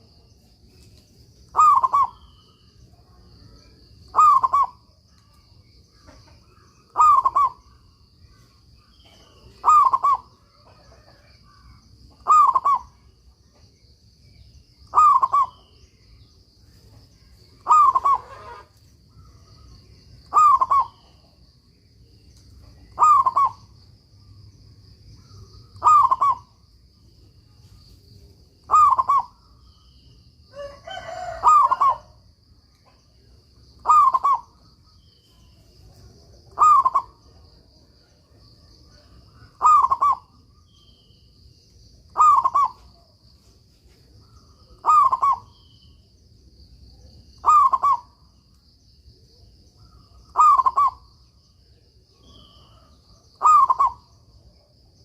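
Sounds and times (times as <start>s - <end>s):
dove cooing: 1.5s - 2.3s, 4.1s - 4.8s, 6.1s - 7.9s, 9.0s - 12.9s, 14.9s - 15.7s, 17.6s - 19.6s, 20.3s - 21.2s, 22.8s - 23.6s, 25.7s - 26.5s, 28.7s - 29.4s, 30.6s - 32.2s, 33.8s - 34.6s, 36.5s - 37.3s, 39.0s - 40.3s, 42.1s - 43.1s, 44.7s - 45.5s, 47.4s - 48.2s, 50.2s - 51.1s, 52.2s - 54.0s.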